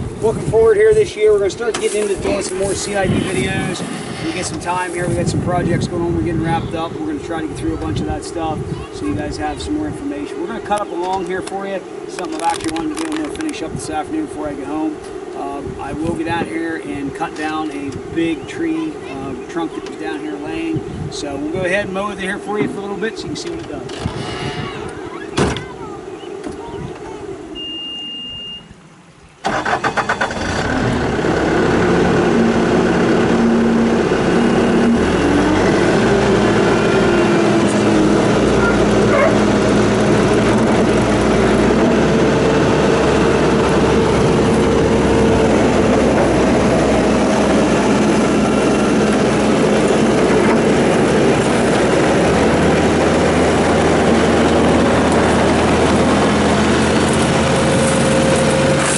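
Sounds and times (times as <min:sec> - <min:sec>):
diesel engine at high throttle: 0:00.0 - 0:24.2, 0:29.4 - 0:58.9.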